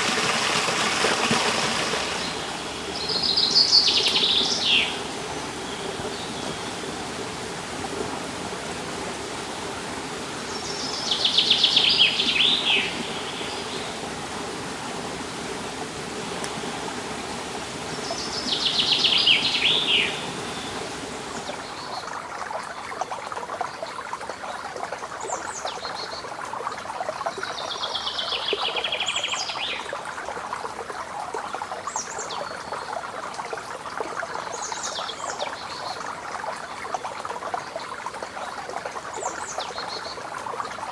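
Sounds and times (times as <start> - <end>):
flowing water rushing: 0.0 - 40.9
songbird trilling: 2.7 - 7.0, 17.9 - 21.6.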